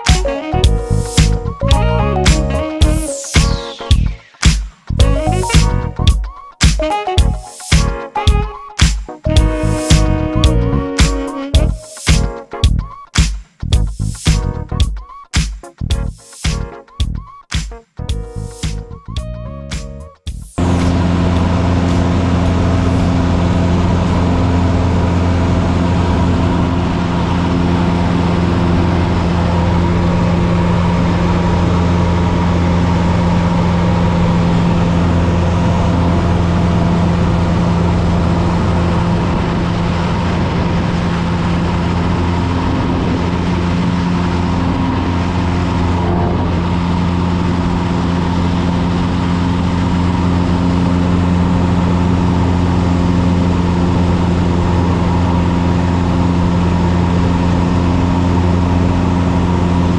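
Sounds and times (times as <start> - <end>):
propeller airplane engine drone: 20.6 - 59.9.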